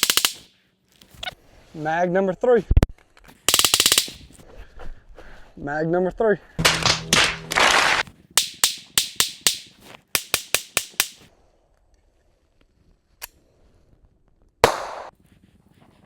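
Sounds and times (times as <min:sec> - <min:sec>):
pistol shots: 0:14.6 - 0:15.1.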